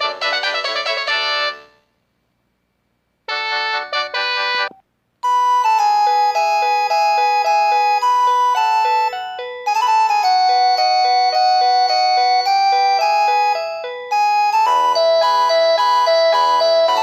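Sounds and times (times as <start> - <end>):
polyphonic phone ringtone melody: 0.0 - 1.7, 5.2 - 17.0.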